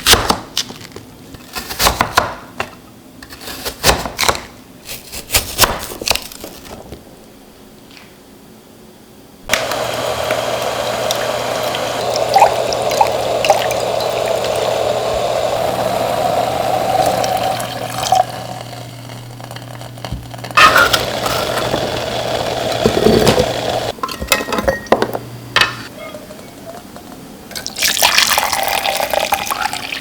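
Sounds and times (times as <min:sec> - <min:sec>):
water running from tap into sink: 0:09.5 - 0:23.9.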